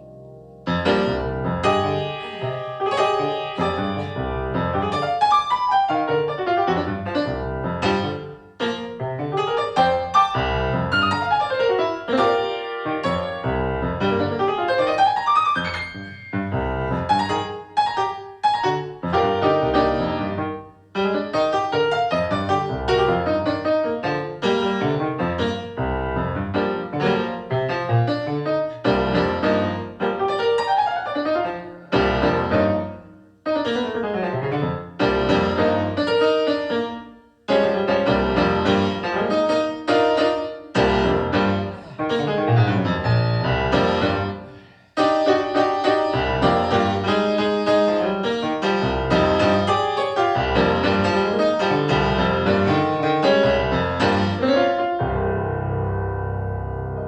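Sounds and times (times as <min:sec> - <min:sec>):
piano-like keyboard music: 0:00.0 - 0:57.0.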